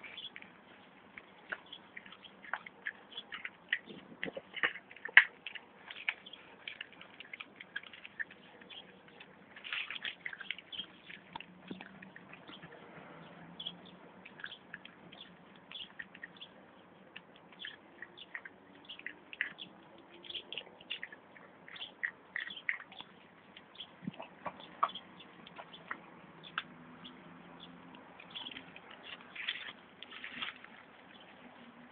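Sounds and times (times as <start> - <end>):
puppy claws clicking and tapping: 1.2 - 12.8, 17.1 - 27.2.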